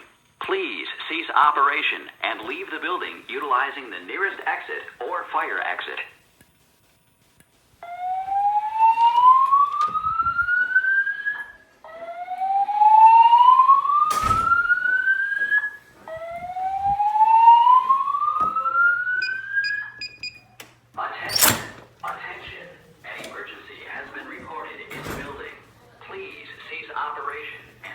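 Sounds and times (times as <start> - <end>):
rising whoop alarm tone: 7.8 - 20.0.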